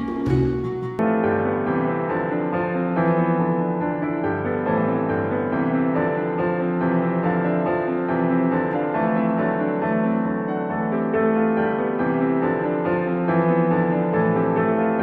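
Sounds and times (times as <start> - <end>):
slow tender piano music: 0.0 - 15.0.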